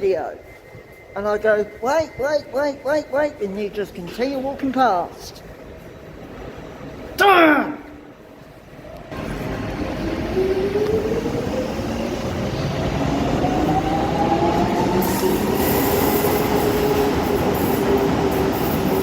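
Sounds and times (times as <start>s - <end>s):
rail noise hiss: 14.6s - 19.0s.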